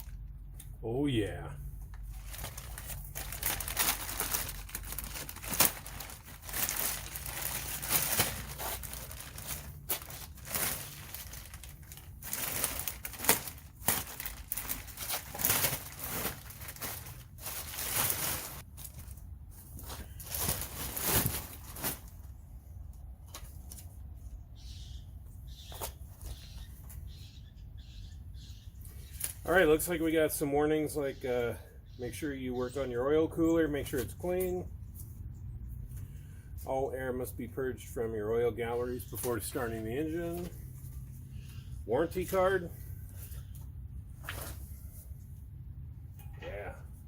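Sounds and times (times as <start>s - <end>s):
packaging crinkling and rustling: 1.9s - 22.3s.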